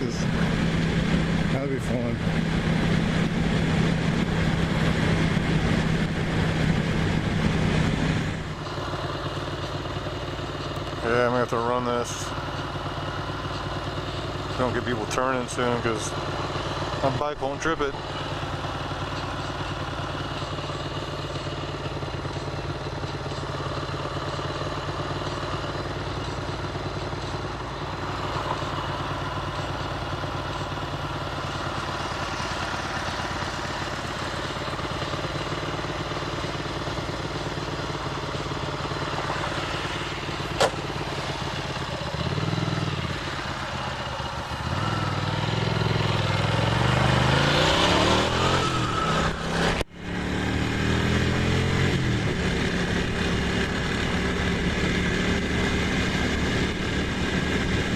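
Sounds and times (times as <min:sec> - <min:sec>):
motorcycle engine idling and revving: 0:00.0 - 0:57.9.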